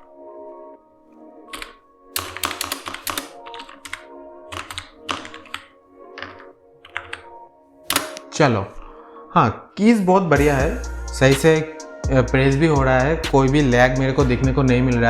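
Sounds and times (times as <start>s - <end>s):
keyboard keys clicking: 1.5s - 9.0s.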